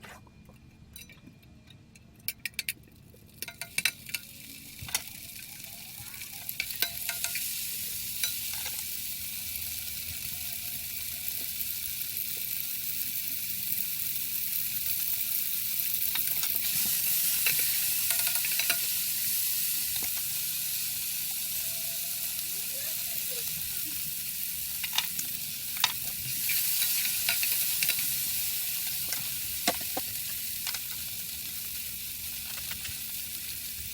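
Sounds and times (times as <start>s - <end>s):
food sizzling in a pan: 3.2s - 33.9s
utensil clicking against pan: 16.1s - 19.0s.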